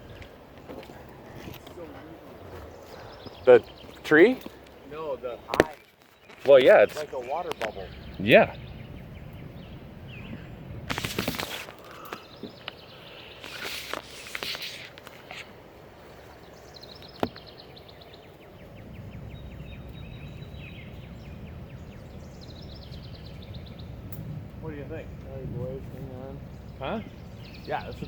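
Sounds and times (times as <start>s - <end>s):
bird singing high trills: 16.5s - 24.1s.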